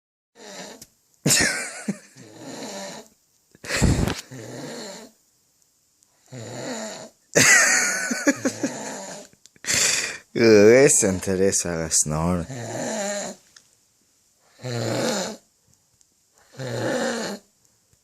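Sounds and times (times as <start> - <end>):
man snoring loudly: 0.4 - 0.8, 1.8 - 3.1, 3.7 - 5.1, 6.3 - 7.2, 8.2 - 11.4, 12.3 - 13.4, 14.5 - 15.4, 16.4 - 17.4
quiet breath: 9.6 - 10.3.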